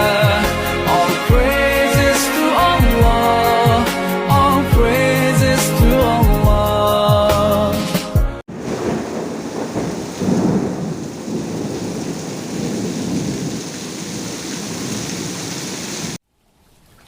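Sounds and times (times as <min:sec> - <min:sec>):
heavy rain pouring: 0:08.5 - 0:16.2.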